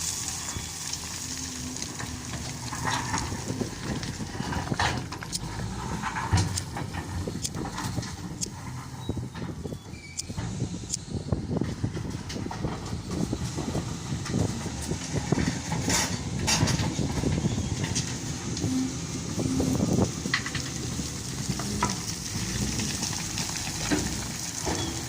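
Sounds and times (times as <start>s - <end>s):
wheel loader crackling rumble: 0.0s - 25.0s
knocks and clicks: 4.8s - 8.6s.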